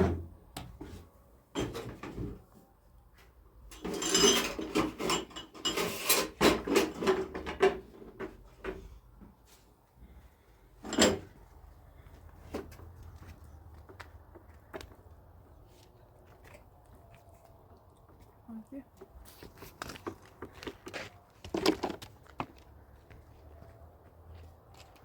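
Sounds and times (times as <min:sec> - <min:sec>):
objects knocking and rustling: 0:00.0 - 0:02.5, 0:03.7 - 0:09.4, 0:10.8 - 0:11.4, 0:19.0 - 0:22.6.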